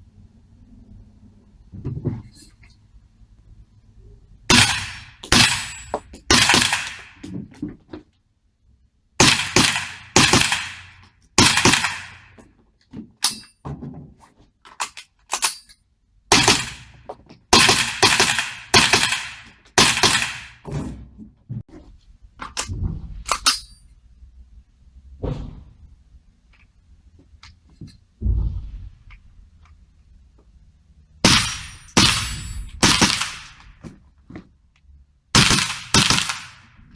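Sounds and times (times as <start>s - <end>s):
gunshots: 4.5s - 7.2s, 9.2s - 12.3s, 16.3s - 16.9s, 17.6s - 20.6s, 31.2s - 33.6s, 35.4s - 36.7s.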